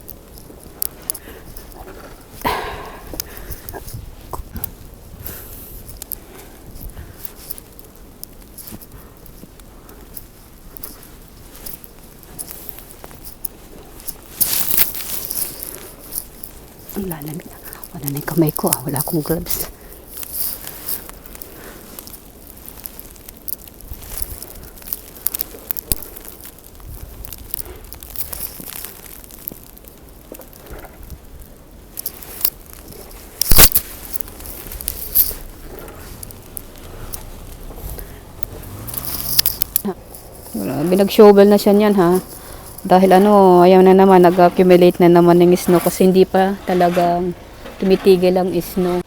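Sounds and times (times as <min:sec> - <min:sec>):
crackles: 0:00.0 - 0:49.0
footsteps crunching through snow: 0:32.1 - 0:49.0.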